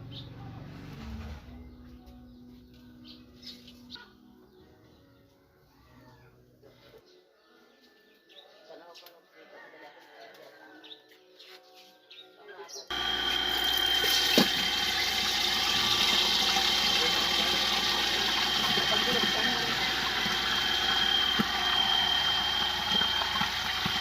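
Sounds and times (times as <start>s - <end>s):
meat sizzling in hot oil: 12.9s - 24.0s
oil popping: 12.9s - 24.0s.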